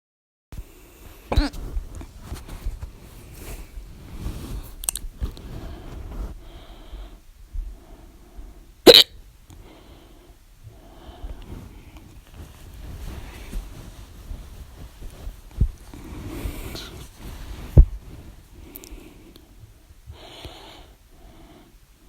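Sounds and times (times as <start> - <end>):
person hiccuping: 1.3 - 1.6, 8.9 - 9.2.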